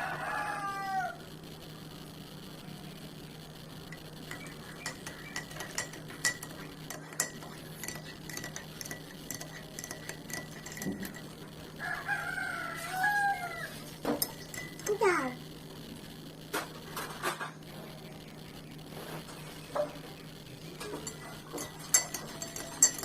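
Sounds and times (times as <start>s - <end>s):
faint steady hum: 0.0s - 23.0s
spoon clinking kitchenware: 3.9s - 11.4s, 14.1s - 15.0s, 20.8s - 23.0s.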